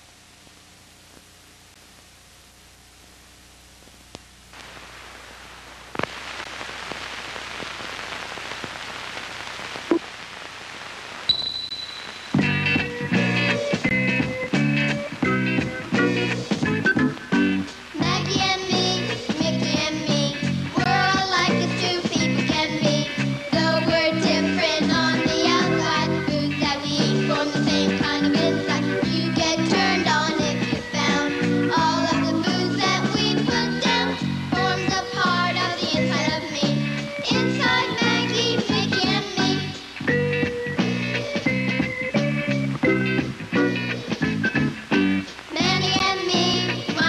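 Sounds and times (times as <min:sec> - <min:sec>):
crackles and pops: 0:00.0 - 0:25.5, 0:40.4 - 0:47.0
film soundtrack hiss: 0:00.0 - 0:47.0
upbeat band music: 0:11.3 - 0:47.0.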